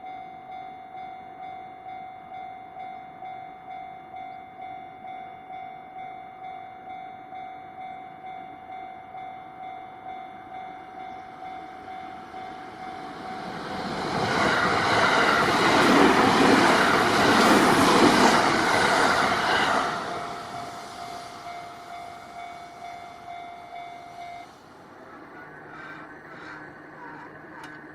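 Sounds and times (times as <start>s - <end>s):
level-crossing warning bell: 0.0s - 27.9s
train rumble and wheel noise: 0.0s - 27.9s.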